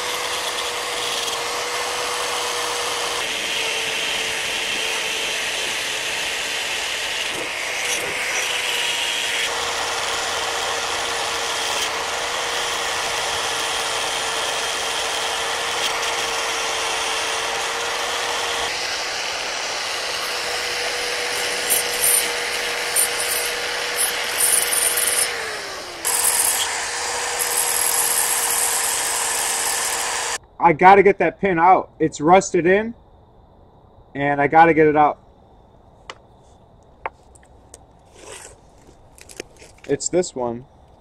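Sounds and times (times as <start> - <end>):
grinding scraping spikes: 0.0 - 30.4, 37.1 - 40.4
power grinder whining: 0.0 - 30.4.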